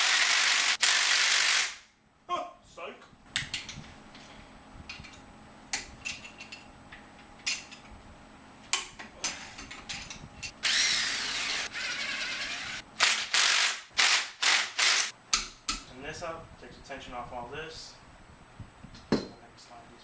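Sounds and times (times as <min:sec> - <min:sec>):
impact wrench running: 0:00.0 - 0:01.8, 0:10.6 - 0:15.1.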